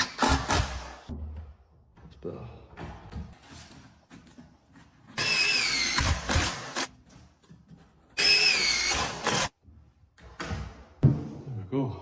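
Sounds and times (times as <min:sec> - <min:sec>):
power drill driving screws: 0:05.2 - 0:06.9, 0:08.2 - 0:09.6.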